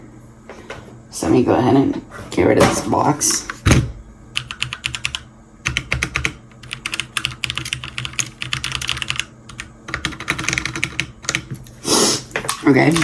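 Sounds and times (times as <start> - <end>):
mechanical keyboard typing: 4.4 - 11.5.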